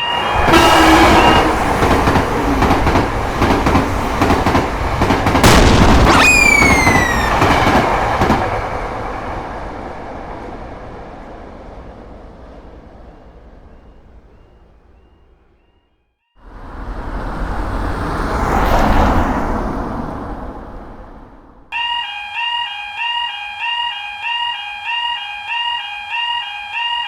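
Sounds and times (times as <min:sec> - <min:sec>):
train rumbling past: 0:00.0 - 0:15.8, 0:16.4 - 0:21.8
high tone sliding down: 0:06.1 - 0:07.8.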